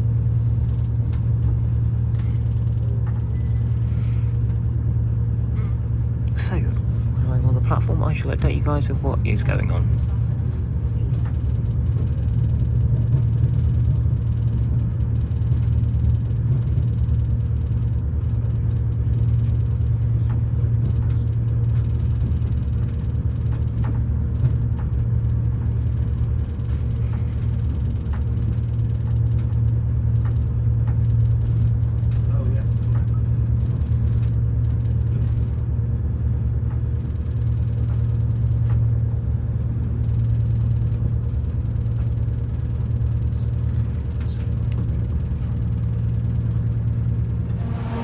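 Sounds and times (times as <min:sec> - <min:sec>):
diesel train engine idling: 0:00.0 - 0:24.4, 0:40.3 - 0:48.0.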